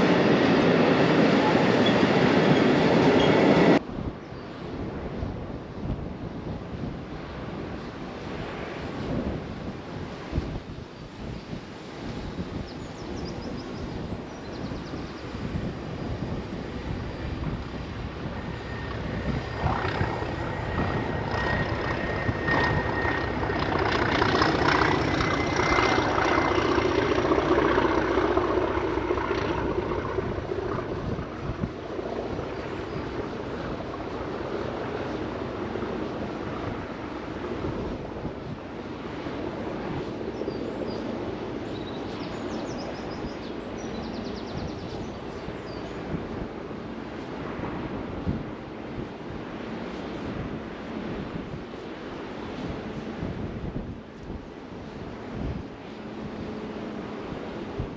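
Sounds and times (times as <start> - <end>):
train passing by: 0.0 - 3.8, 15.8 - 34.4
steady high whine: 16.0 - 38.6.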